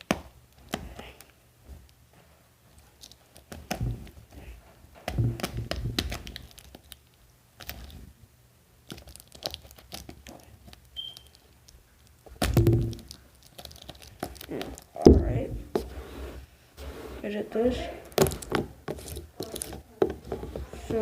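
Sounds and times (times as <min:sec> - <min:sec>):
plastic seal crinkling and tearing: 0:05.5 - 0:08.0, 0:08.8 - 0:15.0, 0:18.1 - 0:20.1.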